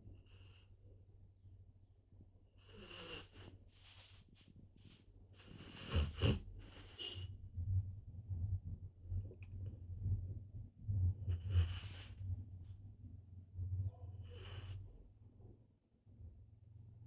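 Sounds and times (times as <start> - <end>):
steady low hum: 0.0 - 17.0
dog snoring and wheezing: 2.6 - 3.6, 5.4 - 7.2, 11.3 - 12.2, 13.9 - 15.0.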